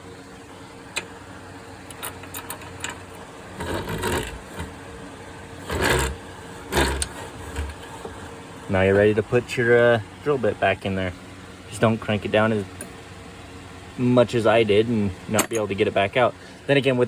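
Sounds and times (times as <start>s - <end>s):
drill press motor hum: 0.0s - 9.2s
knocks and rattles: 1.9s - 4.8s, 5.7s - 8.1s.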